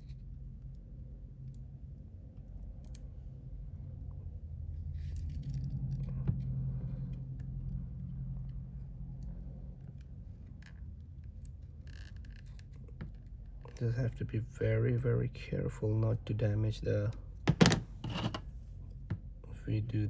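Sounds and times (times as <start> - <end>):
low steady hum: 0.0 - 20.0
hand tools clicking and scraping: 17.5 - 18.4.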